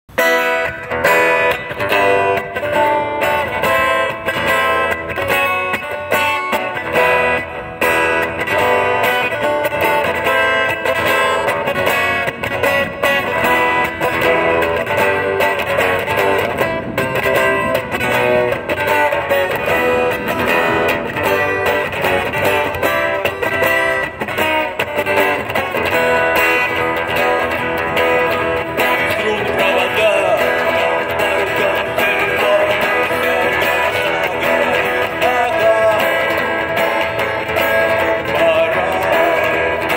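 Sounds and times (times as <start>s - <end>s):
plucked and strummed guitar: 0.1s - 39.9s.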